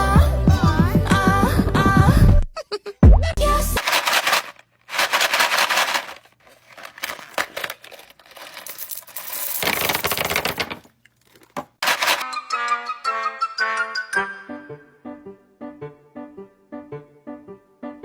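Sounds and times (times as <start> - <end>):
music: 0.0 - 3.8, 12.2 - 18.0
packaging crinkling and tearing: 3.8 - 12.2.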